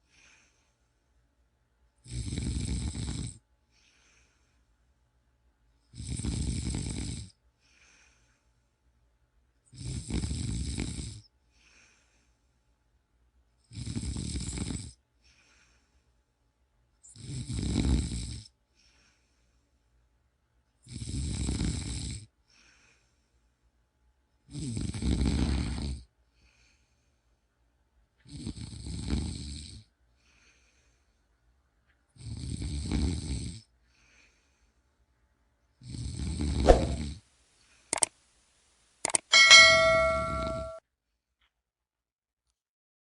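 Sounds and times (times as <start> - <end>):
faint breath: 0.0 - 1.1, 3.6 - 4.8, 7.6 - 8.9, 11.4 - 12.8, 15.2 - 16.3, 18.7 - 20.0, 22.4 - 23.7, 26.3 - 27.5, 30.1 - 31.5, 33.8 - 35.1
loud snoring: 2.0 - 3.4, 5.9 - 7.3, 9.8 - 11.2, 13.7 - 14.9, 17.1 - 18.5, 20.8 - 22.3, 24.5 - 26.1, 28.3 - 29.8, 32.2 - 33.6, 35.8 - 37.2.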